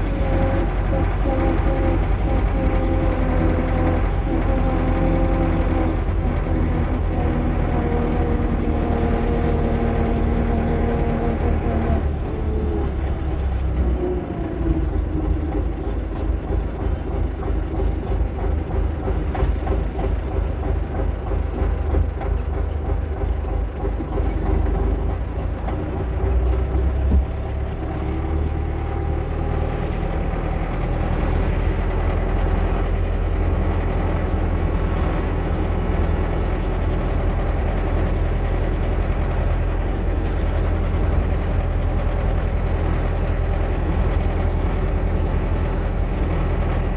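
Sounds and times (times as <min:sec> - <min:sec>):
tractor diesel engine rumbling: 0:00.0 - 0:46.9.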